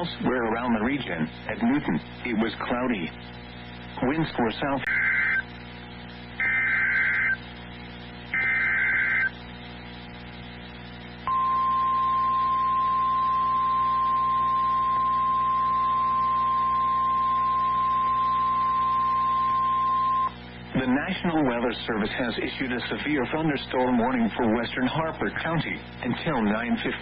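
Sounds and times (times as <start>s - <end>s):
buzzy digital data bursts: 4.0s - 9.4s
steady alarm tone: 6.4s - 7.4s, 8.3s - 9.3s, 11.2s - 20.3s.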